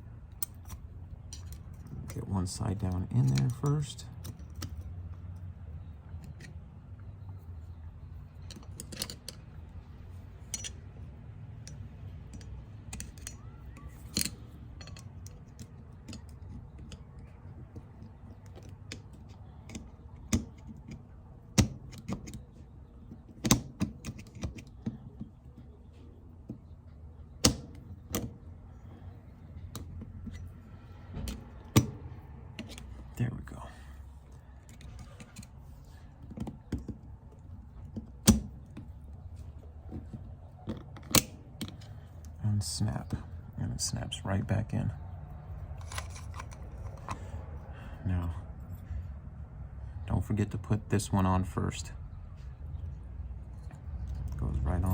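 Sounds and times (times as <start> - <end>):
low steady hum: 0.0 - 54.9
small metal parts clicking: 8.4 - 9.6, 10.4 - 10.9, 11.6 - 22.4, 45.5 - 47.4.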